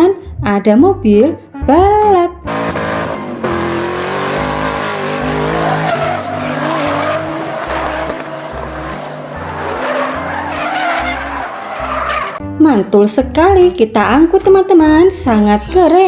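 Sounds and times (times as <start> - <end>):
race car engine: 2.4 - 12.5
tyres squealing: 2.5 - 12.4.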